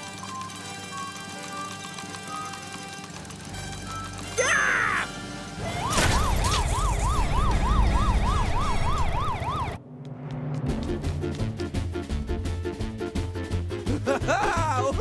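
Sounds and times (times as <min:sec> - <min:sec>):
siren wailing: 0:04.4 - 0:09.8.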